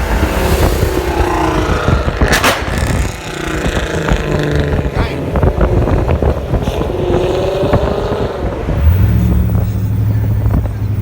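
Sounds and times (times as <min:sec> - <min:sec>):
car exhaust with crackling pops: 0:00.0 - 0:11.0.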